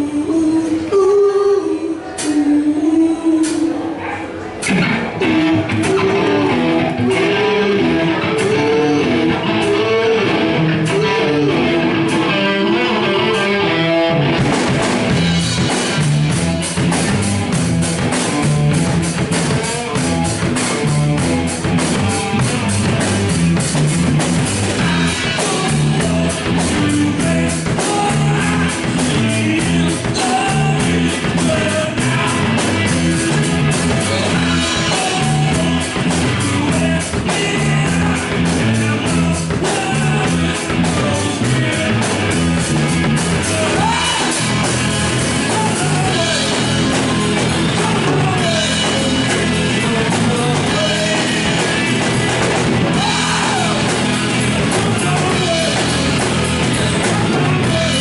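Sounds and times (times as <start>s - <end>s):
electric guitar: 0.0s - 58.0s
live rock band playing: 4.4s - 58.0s
drums beat: 4.7s - 58.0s.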